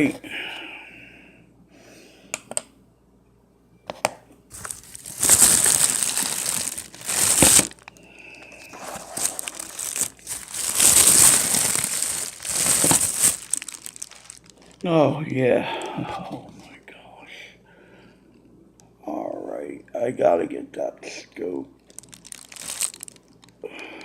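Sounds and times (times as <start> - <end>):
paper crinkling and tearing: 4.5 - 14.9, 21.9 - 23.4.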